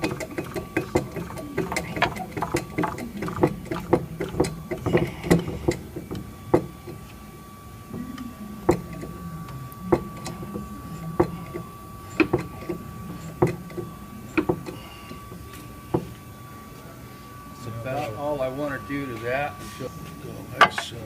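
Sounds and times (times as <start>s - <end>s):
low steady hum: 0.0s - 21.0s
metal clicks and knocks: 9.9s - 16.2s.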